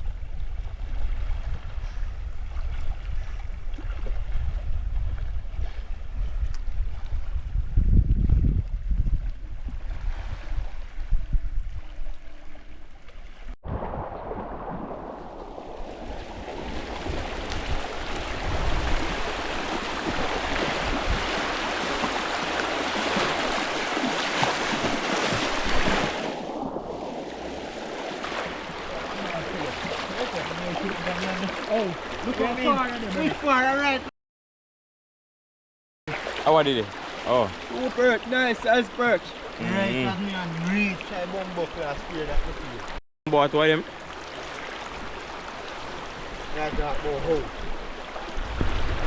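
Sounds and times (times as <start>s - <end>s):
wind rumble on microphone: 0.0s - 23.6s, 46.2s - 49.0s
flowing river water: 0.1s - 7.4s, 8.2s - 34.1s, 36.1s - 49.0s.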